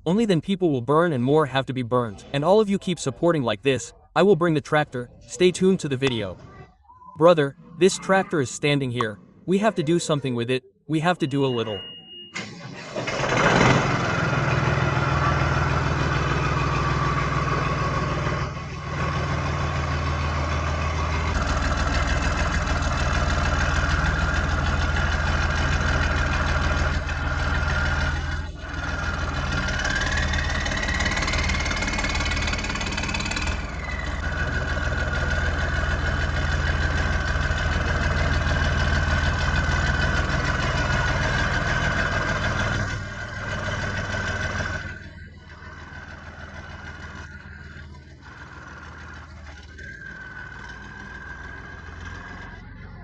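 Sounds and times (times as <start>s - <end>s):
tractor engine idling: 12.4s - 53.0s.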